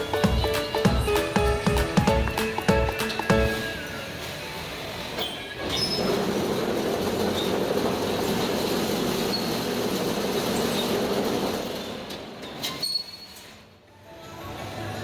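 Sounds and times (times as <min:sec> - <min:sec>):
machine rattling and rumbling: 0:05.7 - 0:12.6.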